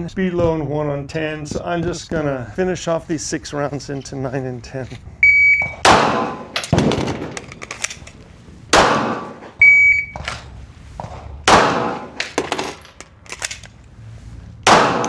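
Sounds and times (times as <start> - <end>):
short electronic beep: 5.2 - 5.8, 9.6 - 10.2
pistol shots: 5.6 - 10.4, 11.5 - 13.8, 14.7 - 15.0.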